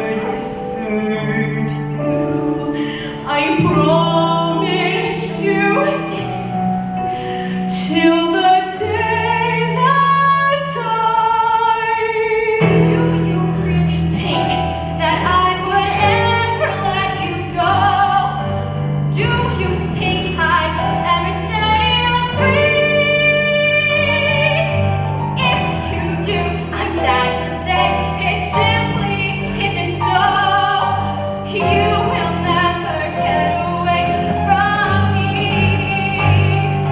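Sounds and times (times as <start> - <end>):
women's choir singing in harmony: 0.0 - 6.8, 25.4 - 36.9.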